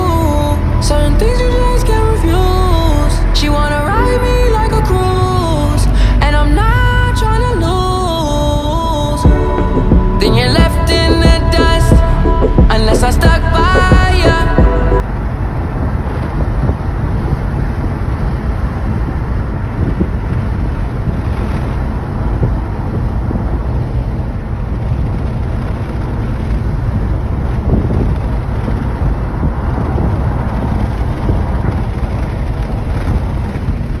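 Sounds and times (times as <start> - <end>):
steady low rumble: 0.0 - 34.0
wind buffeting microphone: 9.2 - 34.0.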